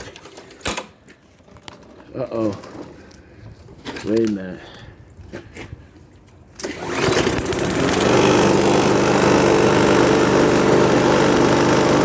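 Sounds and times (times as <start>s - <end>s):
lawn mower engine running: 6.6s - 12.0s.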